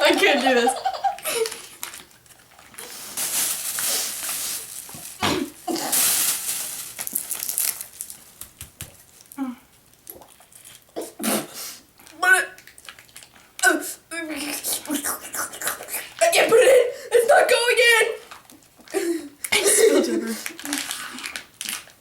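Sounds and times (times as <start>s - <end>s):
foil drink pouches crinkling: 1.0s - 9.4s, 12.6s - 13.6s, 20.1s - 22.0s.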